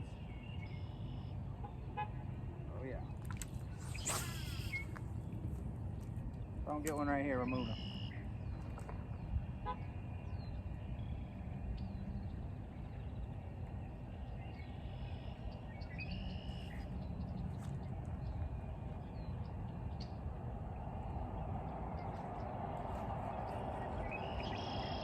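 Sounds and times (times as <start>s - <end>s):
birds chirping: 0.0s - 25.0s
low rumbling noise: 8.1s - 25.0s.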